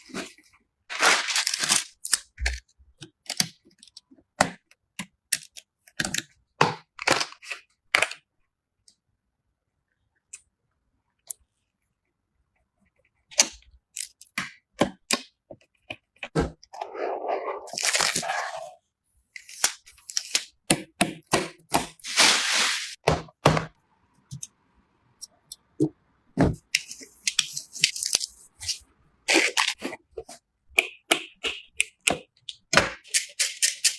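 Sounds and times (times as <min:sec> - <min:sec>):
scraping and rustling: 0:22.0 - 0:23.0.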